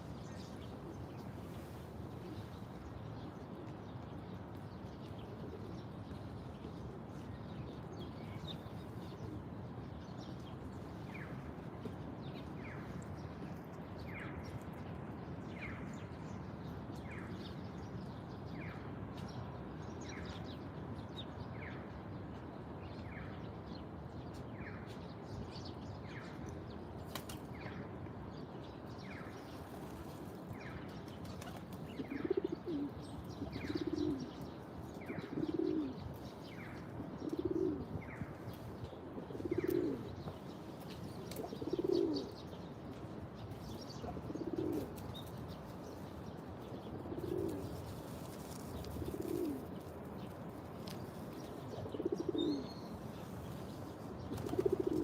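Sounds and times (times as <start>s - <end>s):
dove cooing: 31.4s - 34.4s, 35.0s - 38.2s, 39.1s - 40.2s, 41.3s - 42.5s, 44.0s - 45.1s, 47.0s - 49.8s, 51.7s - 52.8s, 54.3s - 55.0s.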